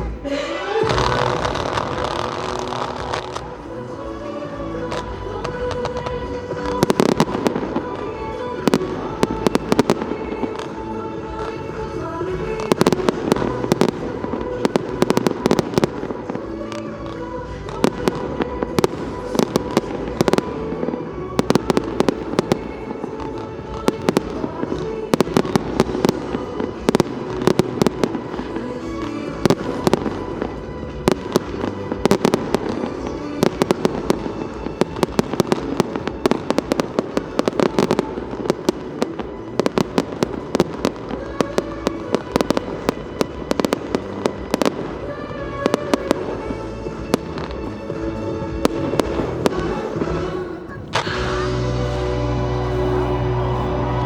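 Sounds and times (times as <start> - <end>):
fireworks bangs and crackling: 0.0 - 54.0
music playing: 0.0 - 54.0.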